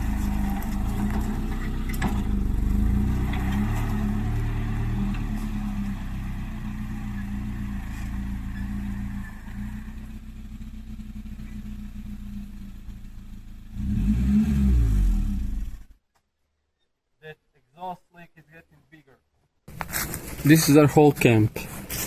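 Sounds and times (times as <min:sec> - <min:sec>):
car engine revving: 0:00.0 - 0:16.0.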